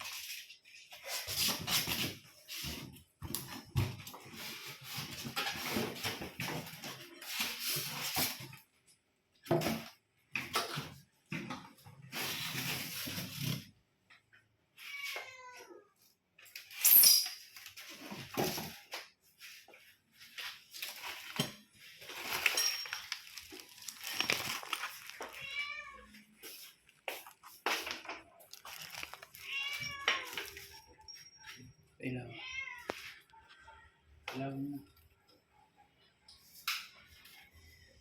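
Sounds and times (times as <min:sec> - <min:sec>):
packaging rustling and clatter: 0:20.2 - 0:30.9.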